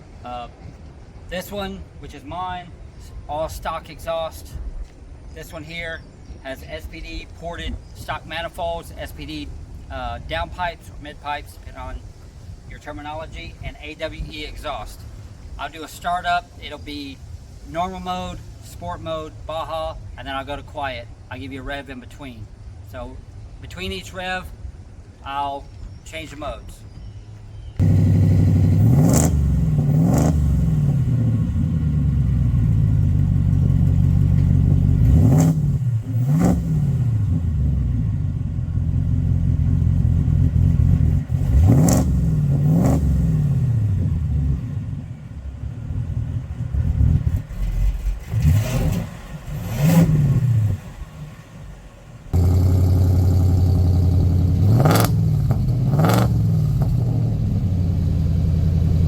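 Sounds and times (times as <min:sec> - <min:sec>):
engine revving: 0:27.8 - 0:51.4, 0:52.3 - 0:59.0
second engine starting and revving: 0:27.8 - 0:59.0.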